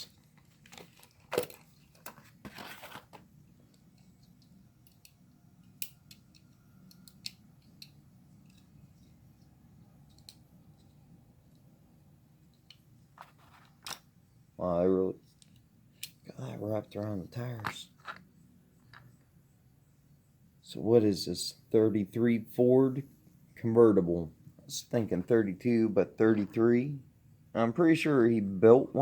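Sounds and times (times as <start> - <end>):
toy packaging handling: 0.0 - 3.3.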